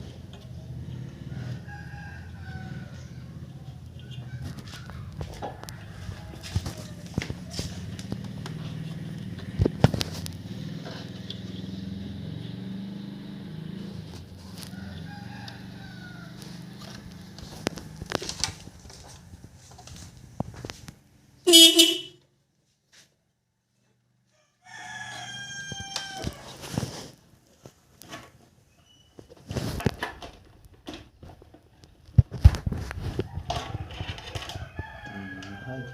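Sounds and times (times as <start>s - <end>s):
rooster crowing: 1.1s - 3.4s, 4.4s - 7.7s, 14.6s - 17.6s, 24.3s - 26.6s, 33.2s - 35.9s
motorcycle horn beep: 21.5s - 22.2s.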